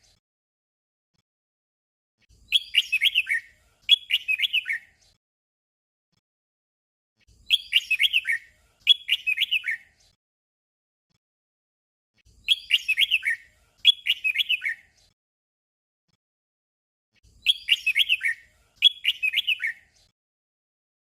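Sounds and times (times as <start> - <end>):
bird singing whistled notes: 2.4 - 5.0, 7.4 - 10.1, 12.3 - 15.0, 17.3 - 20.1.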